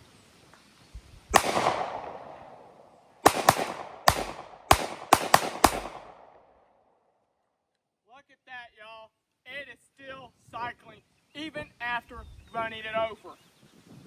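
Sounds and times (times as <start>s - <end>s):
pistol shots echoing: 1.4s - 6.5s.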